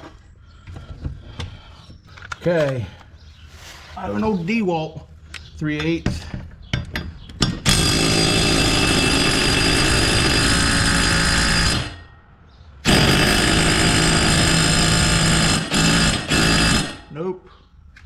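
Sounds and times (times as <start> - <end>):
impact wrench hammering on bolt: 12.9 - 17.2.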